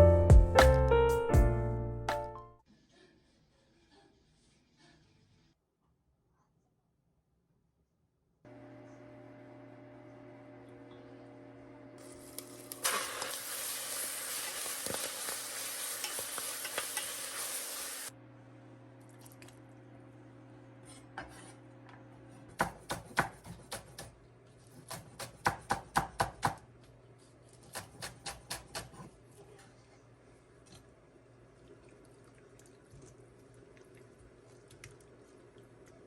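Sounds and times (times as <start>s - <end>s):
food sizzling in a pan: 12.0s - 18.1s
utensil stirring and clinking on pot: 12.0s - 18.1s.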